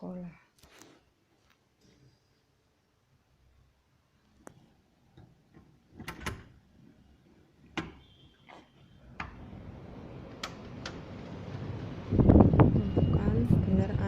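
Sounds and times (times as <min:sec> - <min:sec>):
door latch clicks and knocks: 0:06.0 - 0:06.5
strong wind rushing: 0:11.0 - 0:14.0.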